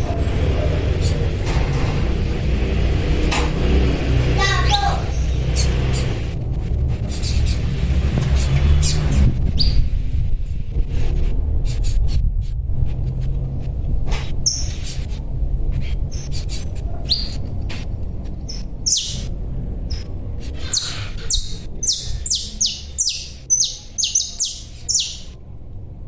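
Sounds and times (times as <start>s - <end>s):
bird chirping high: 0.0s - 1.4s, 2.0s - 6.4s, 7.0s - 9.9s, 14.4s - 15.1s, 15.8s - 25.4s
steady low rumble: 0.0s - 26.0s.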